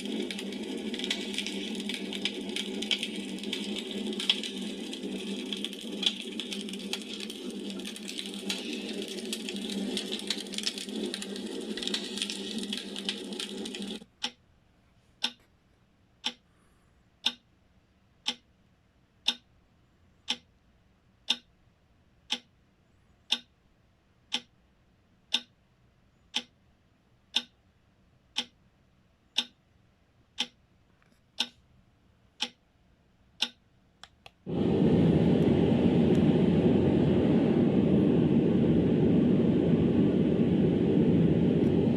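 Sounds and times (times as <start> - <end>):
deep steady noise: 0.0 - 14.0, 34.4 - 41.9
steady hissing noise: 0.0 - 14.1, 34.3 - 41.9
clock ticking: 0.0 - 14.4, 15.2 - 15.4, 16.2 - 16.4, 17.2 - 17.5, 18.2 - 18.5, 19.2 - 19.5, 20.3 - 20.5, 21.2 - 21.5, 22.3 - 22.5, 23.3 - 23.5, 24.3 - 24.6, 25.3 - 25.6, 26.3 - 26.6, 27.3 - 27.6, 28.3 - 28.6, 29.4 - 29.6, 30.4 - 30.6, 31.4 - 31.6, 32.4 - 32.6, 33.4 - 33.6.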